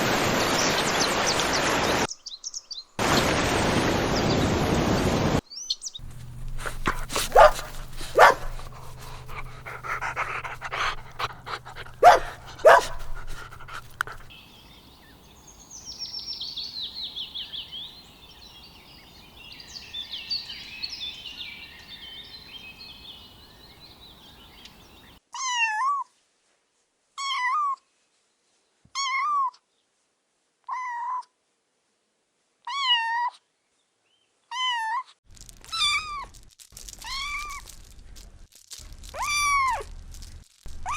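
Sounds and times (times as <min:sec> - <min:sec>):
dog yapping: 0:06.0 - 0:14.3, 0:39.1 - 0:39.9
low hum: 0:06.0 - 0:14.3.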